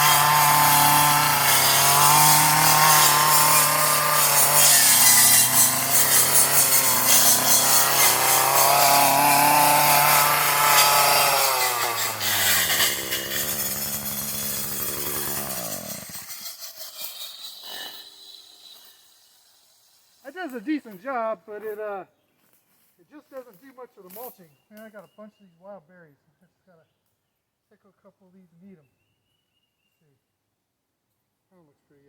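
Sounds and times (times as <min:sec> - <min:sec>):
blade cutting brush: 0:00.0 - 0:19.6
weed eater engine: 0:00.0 - 0:20.6.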